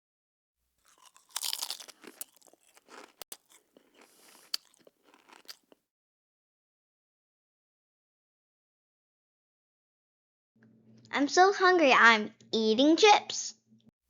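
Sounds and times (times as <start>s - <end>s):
person crunching chips: 0.8s - 5.8s.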